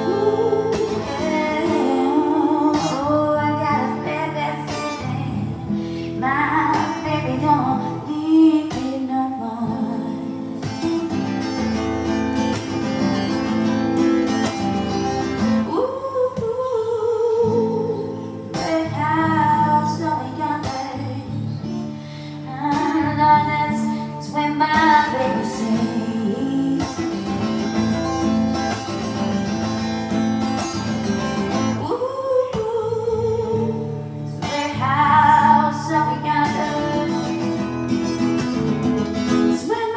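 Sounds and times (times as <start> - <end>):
person singing: 0.0 - 5.5, 22.4 - 27.8, 34.4 - 37.6
acoustic guitar: 0.0 - 39.9.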